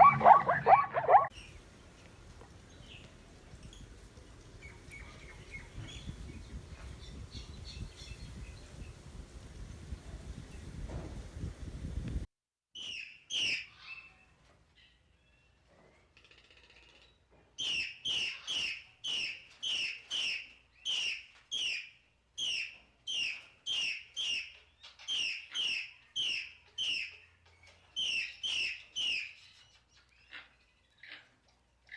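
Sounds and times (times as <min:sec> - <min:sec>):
animal chirping: 0:00.0 - 0:01.5.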